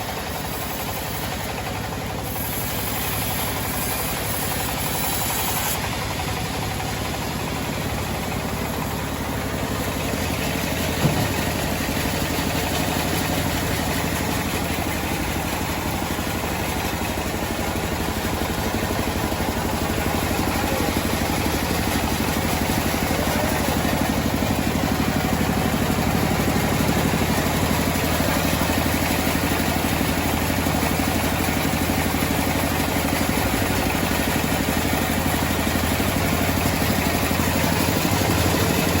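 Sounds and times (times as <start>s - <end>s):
sawmill engine running: 0.0s - 39.0s
sharp knock: 11.0s - 11.5s.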